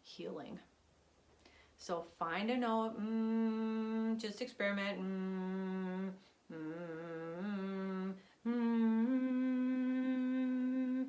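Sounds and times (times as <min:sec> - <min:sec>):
person breathing: 0:01.4 - 0:01.8
person humming: 0:02.8 - 0:11.0.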